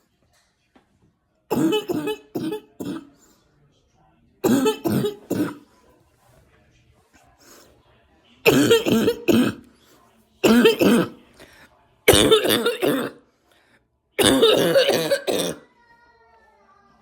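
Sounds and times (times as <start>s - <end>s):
woman coughing: 1.5s - 3.1s, 4.4s - 5.6s, 8.5s - 9.6s, 10.4s - 11.2s, 12.1s - 13.2s, 14.2s - 15.6s.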